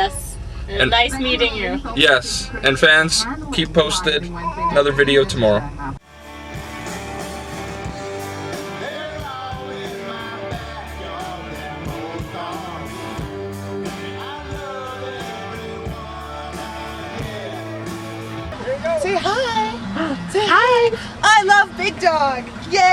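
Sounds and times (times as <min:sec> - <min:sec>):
rock song with singing: 0:06.0 - 0:18.6.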